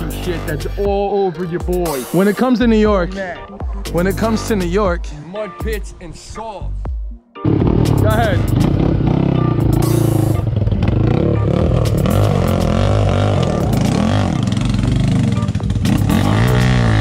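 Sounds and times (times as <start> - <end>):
atv engine revving: 7.4 - 17.0.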